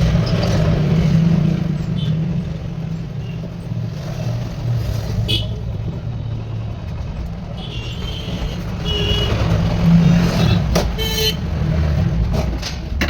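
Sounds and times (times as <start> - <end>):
vehicle engines rumbling: 0.0 - 13.0.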